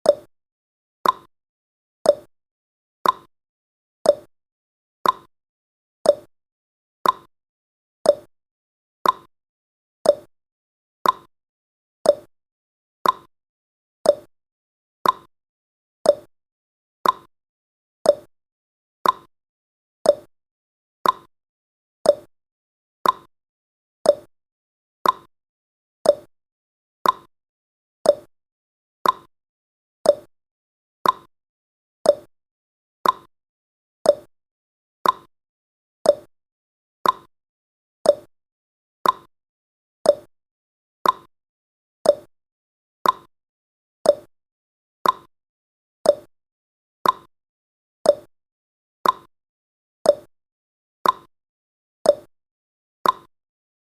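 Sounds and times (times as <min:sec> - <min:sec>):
timer ticking: 0:00.0 - 0:00.3, 0:01.0 - 0:01.3, 0:02.1 - 0:02.3, 0:03.0 - 0:03.3, 0:04.1 - 0:04.3, 0:05.0 - 0:05.3, 0:06.1 - 0:06.3, 0:07.0 - 0:07.3, 0:08.1 - 0:08.3, 0:09.0 - 0:09.3, 0:10.0 - 0:10.3, 0:11.0 - 0:11.3, 0:12.1 - 0:12.3, 0:13.0 - 0:13.3, 0:14.1 - 0:14.3, 0:15.0 - 0:15.3, 0:16.1 - 0:16.3, 0:17.0 - 0:17.3, 0:18.1 - 0:18.3, 0:19.0 - 0:19.3, 0:20.0 - 0:20.3, 0:21.0 - 0:21.3, 0:22.0 - 0:22.3, 0:23.0 - 0:23.3, 0:24.1 - 0:24.3, 0:25.0 - 0:25.3, 0:26.0 - 0:26.3, 0:27.0 - 0:27.3, 0:28.0 - 0:28.3, 0:29.0 - 0:29.3, 0:30.0 - 0:30.3, 0:31.0 - 0:31.3, 0:32.1 - 0:32.3, 0:33.0 - 0:33.3, 0:34.0 - 0:34.3, 0:35.0 - 0:35.3, 0:36.0 - 0:36.3, 0:37.0 - 0:37.3, 0:38.0 - 0:38.3, 0:39.0 - 0:39.3, 0:40.1 - 0:40.3, 0:41.0 - 0:41.3, 0:42.0 - 0:42.3, 0:43.0 - 0:43.3, 0:44.1 - 0:44.3, 0:45.0 - 0:45.3, 0:46.1 - 0:46.3, 0:47.0 - 0:47.3, 0:48.1 - 0:48.3, 0:49.0 - 0:49.3, 0:50.1 - 0:50.3, 0:51.0 - 0:51.3, 0:52.1 - 0:52.3, 0:53.0 - 0:53.3.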